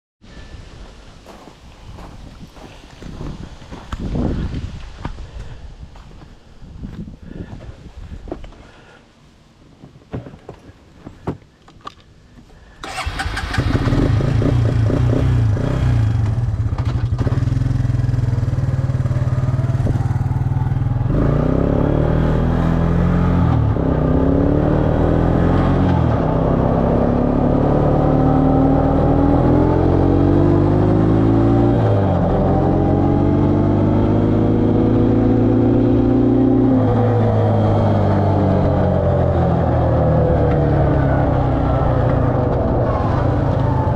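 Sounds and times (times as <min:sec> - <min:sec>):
atv engine shifting gears: 0:12.8 - 0:26.7.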